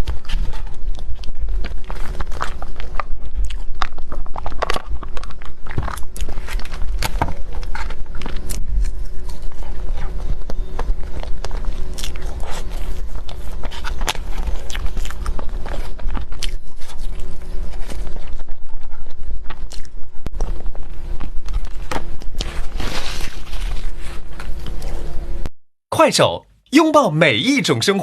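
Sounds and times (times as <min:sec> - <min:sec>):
steady low hum: 0:00.0 - 0:28.0
chewing and wet mouth smacks: 0:00.1 - 0:18.5, 0:19.4 - 0:20.5.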